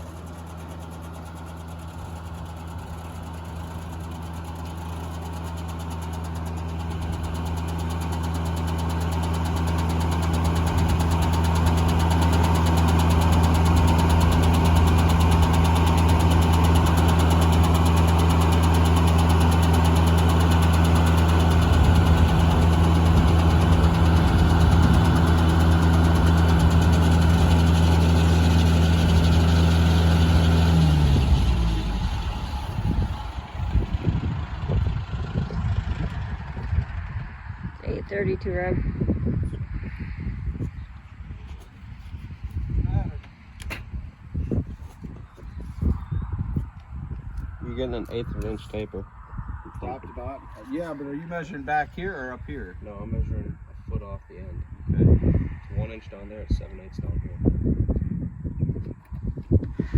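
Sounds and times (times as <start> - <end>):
sawmill engine running: 0.0 - 37.4.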